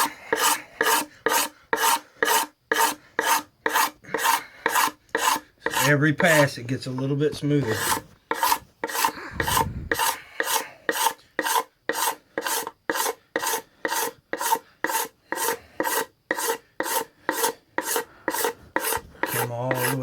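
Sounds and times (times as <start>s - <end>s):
knife scraping wooden board: 0.0s - 6.5s, 7.6s - 20.0s.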